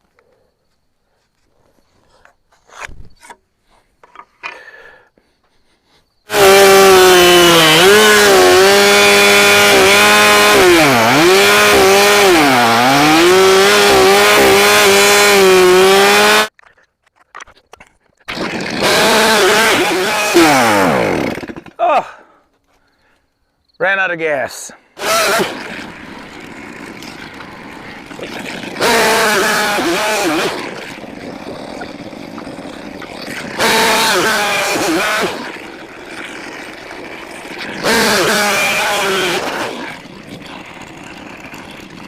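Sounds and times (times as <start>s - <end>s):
sawmill gas engine running: 6.3s - 16.5s, 18.3s - 21.8s, 25.0s - 42.0s.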